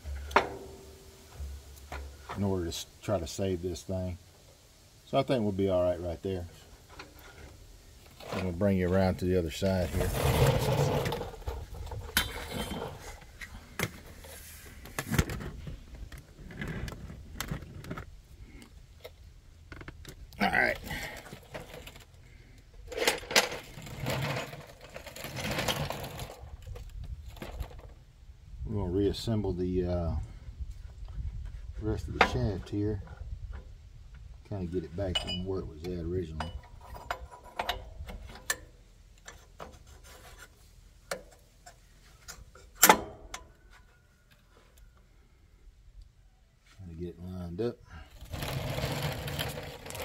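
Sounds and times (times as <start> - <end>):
metal parts rattling and shuffling: 20.8 - 22.2, 22.8 - 27.9, 48.1 - 50.0.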